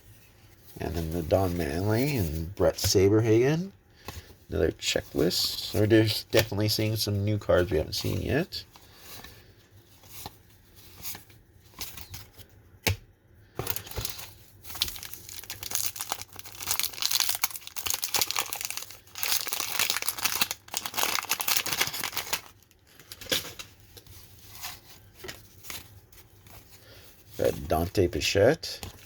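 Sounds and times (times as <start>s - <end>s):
wrapper crinkling: 13.7s - 28.0s.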